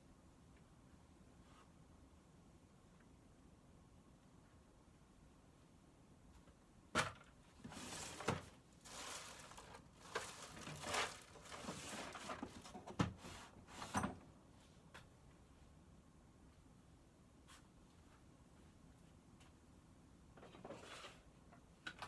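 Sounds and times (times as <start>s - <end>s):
rustling and scraping: 7.6s - 14.2s, 20.4s - 21.4s.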